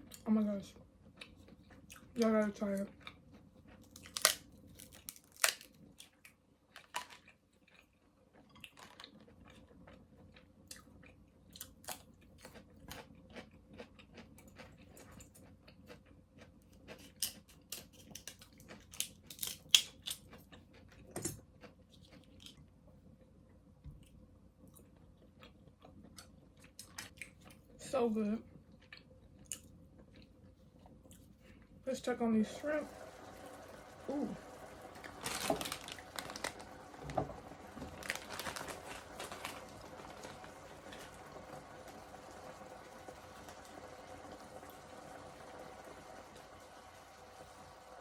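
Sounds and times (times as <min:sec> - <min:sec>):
close chewing: 0:02.8 - 0:22.8.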